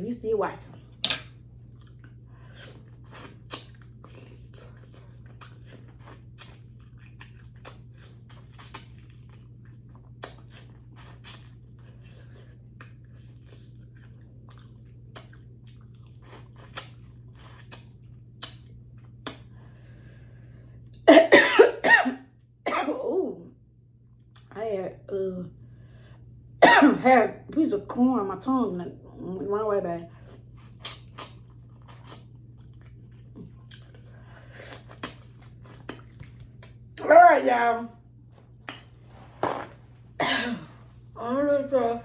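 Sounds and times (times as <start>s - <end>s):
close chewing: 1.6s - 19.4s, 30.2s - 36.8s
loud coughing: 21.1s - 23.0s, 26.6s - 27.0s, 40.2s - 40.7s.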